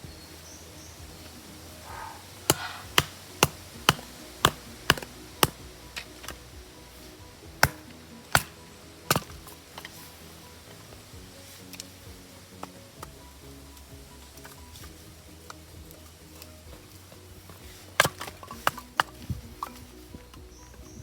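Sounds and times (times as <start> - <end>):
quiet background music: 0.0 - 21.0.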